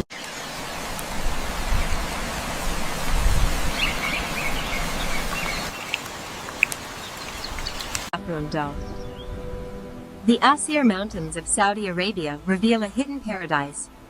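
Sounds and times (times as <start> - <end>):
small birds chirping: 3.8 - 8.1
steady hiss: 5.3 - 8.1
sharp ticks: 5.4 - 8.1.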